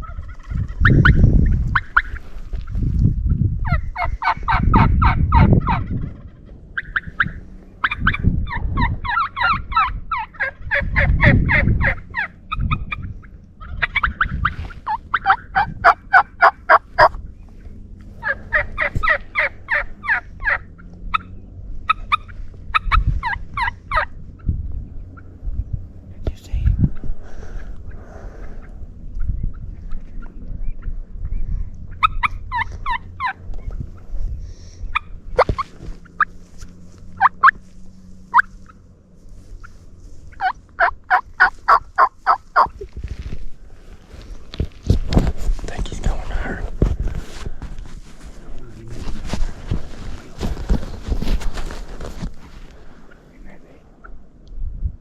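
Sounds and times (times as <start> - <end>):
turkey gobbling: 0.0 - 2.7, 3.6 - 17.2, 18.2 - 24.5, 31.9 - 33.8, 37.2 - 37.6, 38.3 - 38.8, 39.6 - 42.8
deep low rumbles: 0.0 - 55.0.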